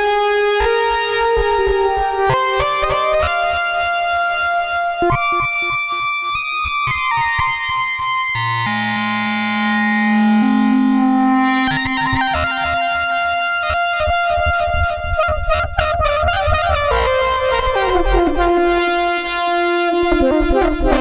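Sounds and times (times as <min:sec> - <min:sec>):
buzzy synthesizer note: 0:08.6 - 0:21.0.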